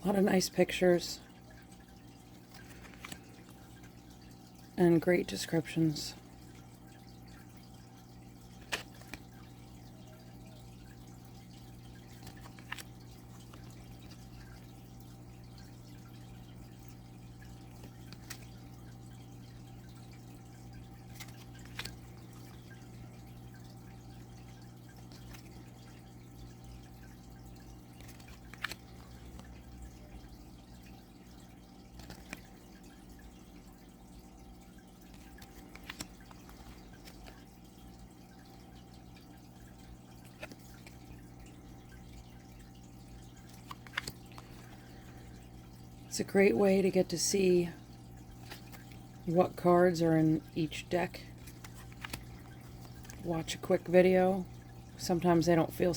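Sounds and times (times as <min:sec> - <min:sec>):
cards tapping: 0:51.4 - 0:53.2.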